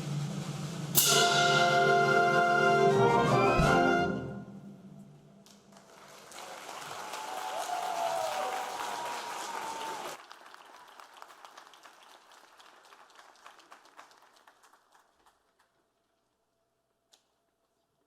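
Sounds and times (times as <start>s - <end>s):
crowd cheering: 5.7s - 14.3s
audience applauding: 5.7s - 15.8s.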